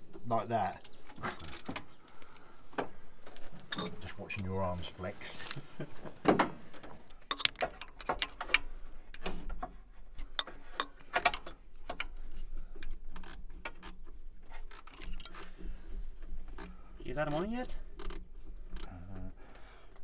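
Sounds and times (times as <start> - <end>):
spanner clicking on engine bolts: 1.1 - 2.5, 3.6 - 4.0, 7.0 - 20.0.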